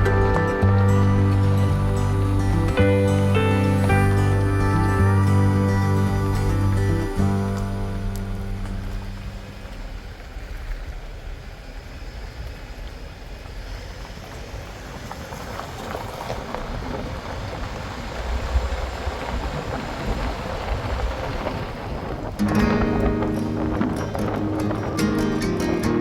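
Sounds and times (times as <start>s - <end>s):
vehicle engine low rumble: 0.0s - 26.0s
wind noise on microphone: 13.9s - 26.0s.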